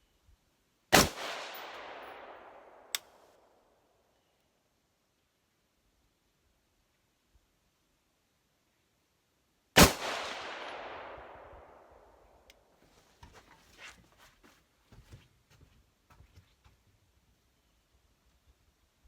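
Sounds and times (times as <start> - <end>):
rifle shot with echo: 1.0 - 3.2, 9.8 - 12.2.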